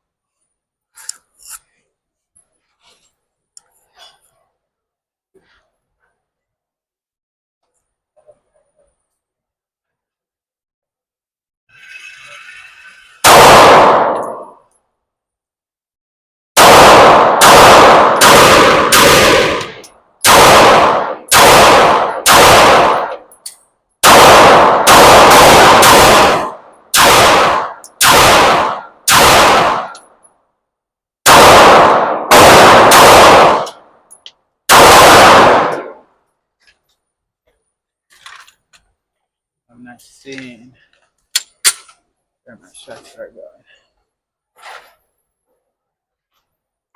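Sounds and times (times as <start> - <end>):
pistol shots echoing indoors: 13.2 - 14.6, 16.6 - 23.3, 24.0 - 30.0, 31.2 - 33.9, 34.7 - 36.1.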